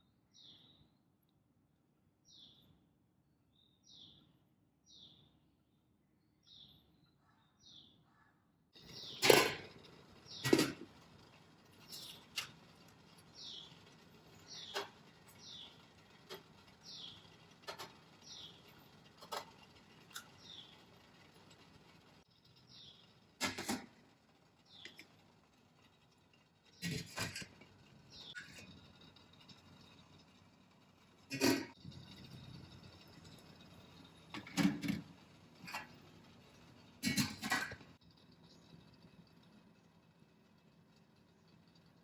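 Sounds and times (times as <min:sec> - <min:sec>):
bird chirping: 0:00.3 - 0:01.0, 0:02.2 - 0:02.8, 0:03.5 - 0:09.2
sharp clatters: 0:08.8 - 0:40.0.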